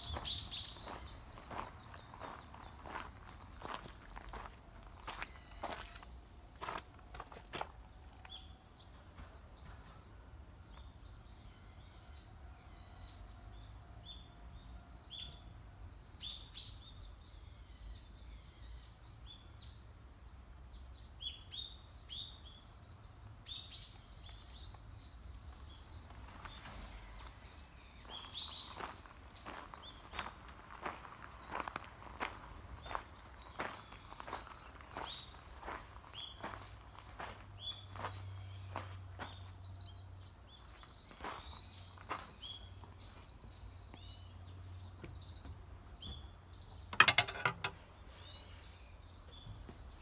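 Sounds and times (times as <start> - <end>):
small birds chirping: 0.0 - 8.6, 21.2 - 50.0
outdoor background noise: 0.0 - 50.0.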